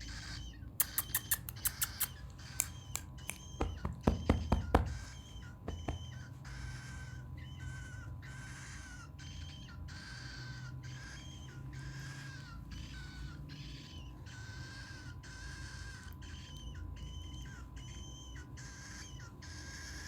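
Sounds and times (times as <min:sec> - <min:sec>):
cockatiel raspy hissing calls: 0:00.0 - 0:03.5.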